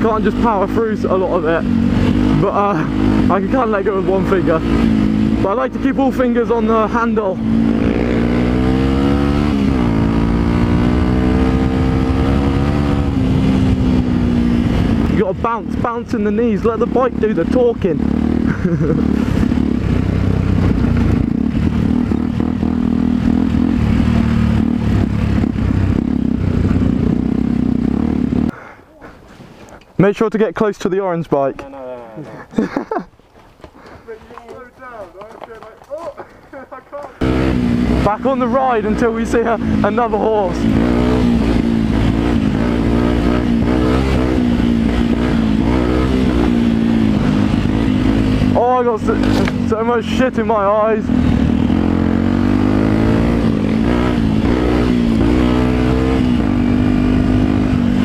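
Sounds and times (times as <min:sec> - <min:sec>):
motorcycle engine under load: 0:00.0 - 0:28.6, 0:33.8 - 0:58.0
motorcycle clattering: 0:47.6 - 0:49.7.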